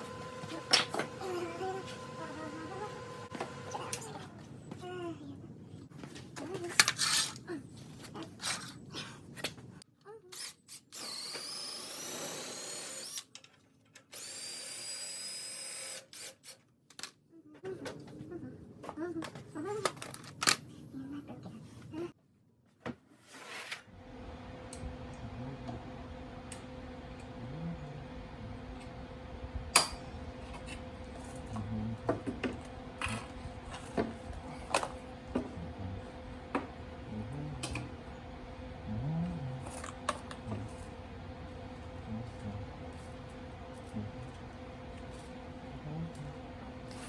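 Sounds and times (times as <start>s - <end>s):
power tool whining: 0.0s - 4.1s
steady low hum: 23.9s - 47.0s.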